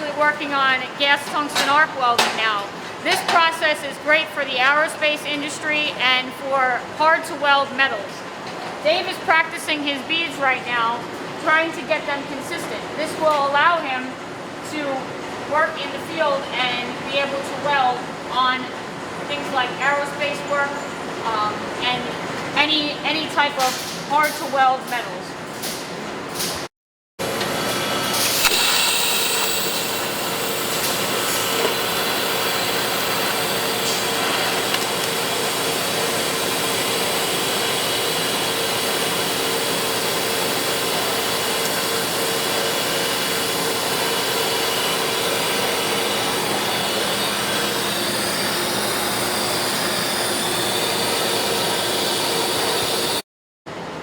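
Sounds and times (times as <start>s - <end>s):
welding hiss: 27.9s - 53.2s.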